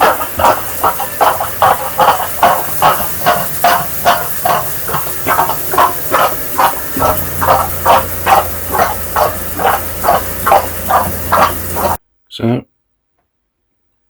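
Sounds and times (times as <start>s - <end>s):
low pump hum: 0.0s - 12.0s
shower spray hissing: 0.0s - 12.0s.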